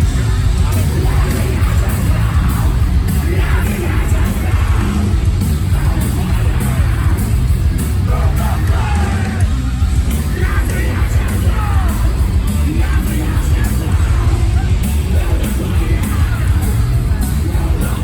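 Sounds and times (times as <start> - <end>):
metal band playing live: 0.0 - 18.0.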